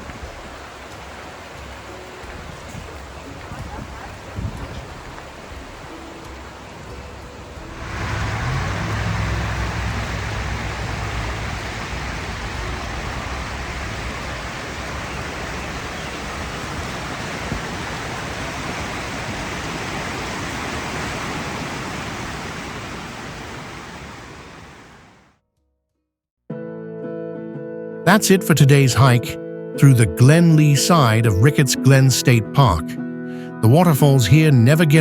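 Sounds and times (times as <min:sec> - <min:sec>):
waterfall roaring: 0:00.0 - 0:25.3, 0:28.1 - 0:29.3.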